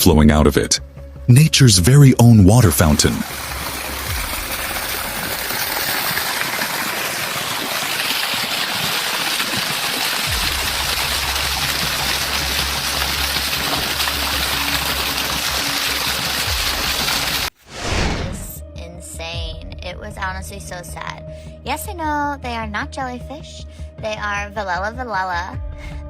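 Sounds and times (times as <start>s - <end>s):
water gushing and splashing: 2.6s - 18.5s
low rumble: 17.7s - 18.6s.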